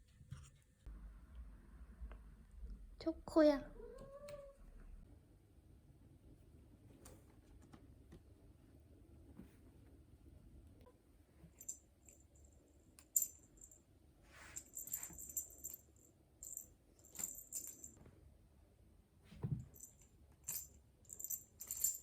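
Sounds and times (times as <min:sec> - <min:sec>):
small metal bell jingling: 0:14.5 - 0:18.0, 0:19.8 - 0:22.0.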